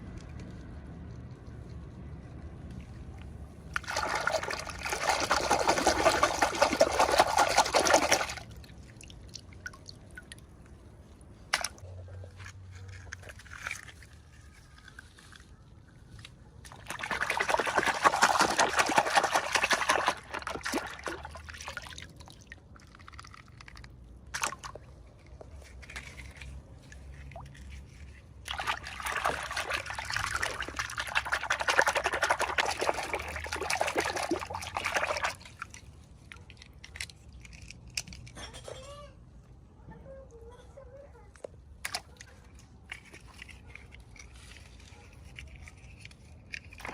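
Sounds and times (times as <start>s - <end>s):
faint small sounds: 0.0s - 17.4s
liquid pouring: 3.8s - 10.5s, 16.7s - 24.6s, 28.5s - 35.9s.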